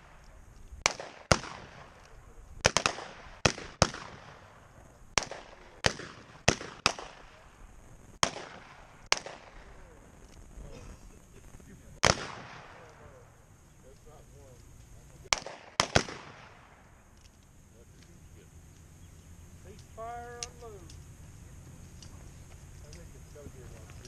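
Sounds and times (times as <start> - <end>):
revolver gunshots: 0.0 - 10.4, 11.5 - 13.6, 15.2 - 17.2.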